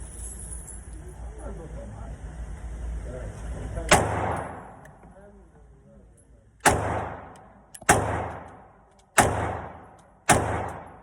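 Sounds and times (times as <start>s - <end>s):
pistol shots echoing: 3.9s - 4.8s, 6.6s - 11.0s.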